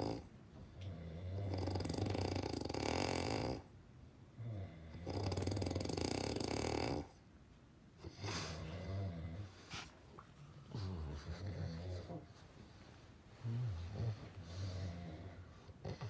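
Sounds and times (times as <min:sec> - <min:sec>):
loud rattling snores: 0:00.0 - 0:00.2, 0:01.1 - 0:03.7, 0:04.6 - 0:07.2
soft breathing: 0:08.0 - 0:16.0.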